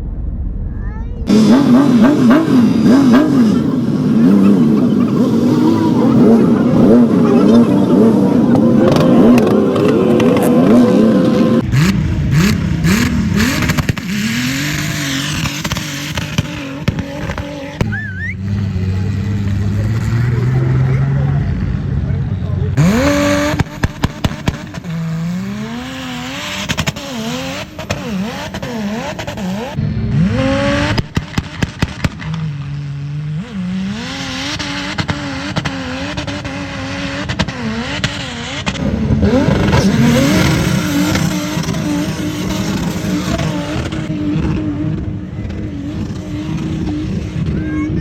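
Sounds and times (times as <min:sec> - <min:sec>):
off-road vehicle engines revving: 0:01.2 - 0:48.0
sharp cracks: 0:13.0 - 0:18.4, 0:30.8 - 0:32.5.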